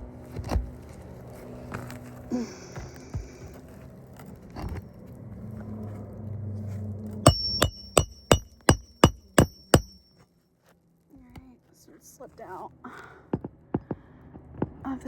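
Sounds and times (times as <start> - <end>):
hammer striking metal: 7.3 - 10.1.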